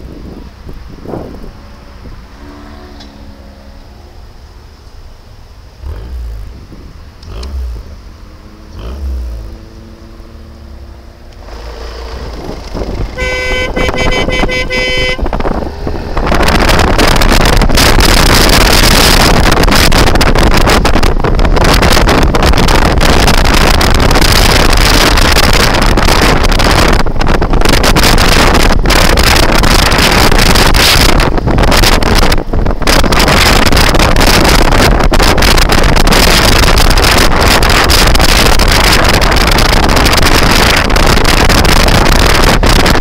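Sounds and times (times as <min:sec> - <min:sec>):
wind buffeting microphone: 0:00.0 - 0:04.3, 0:05.8 - 0:43.0
scooter horn honking: 0:13.1 - 0:15.3.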